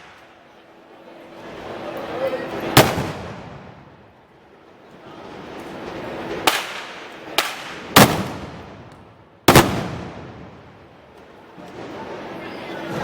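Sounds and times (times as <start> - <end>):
gunshot blasts with echo: 2.8 - 3.8, 6.5 - 8.9, 9.5 - 10.6.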